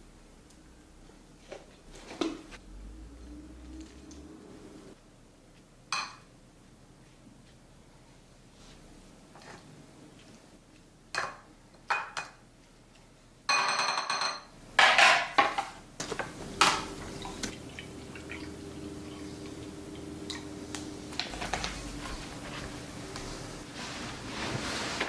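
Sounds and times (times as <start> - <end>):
dishes and utensils clinking: 13.5 - 19.6
steady low hum: 16.4 - 24.4.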